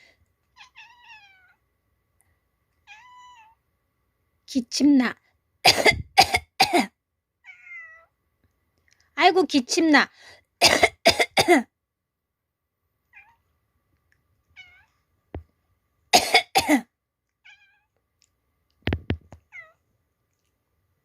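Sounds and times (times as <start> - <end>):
person fake coughing: 5.7 - 7.0, 10.6 - 11.7, 16.2 - 16.9.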